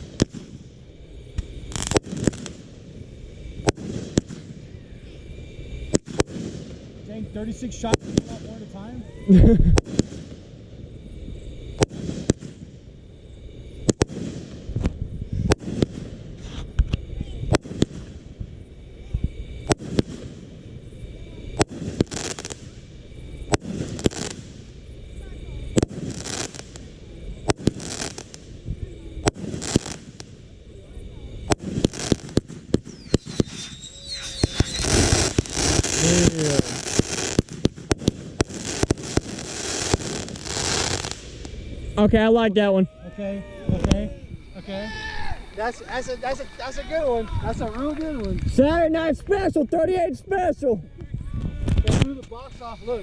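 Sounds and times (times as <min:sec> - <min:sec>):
fireworks bangs: 0:00.0 - 0:13.0, 0:13.8 - 0:42.7.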